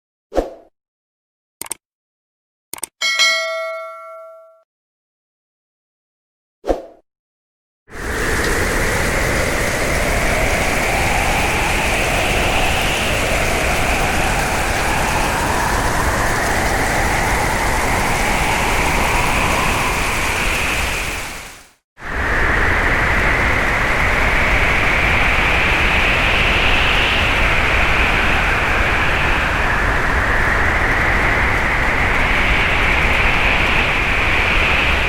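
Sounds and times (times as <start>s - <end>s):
howling storm wind: 7.9s - 35.0s.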